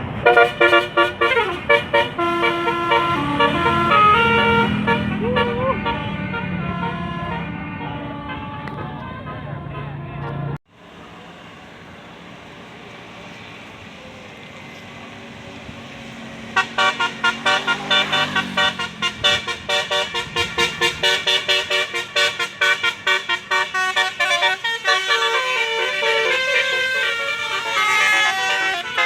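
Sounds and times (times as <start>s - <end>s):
road traffic noise: 0.0s - 29.0s
bus horn playing rapid tune: 0.1s - 10.6s, 16.5s - 29.0s.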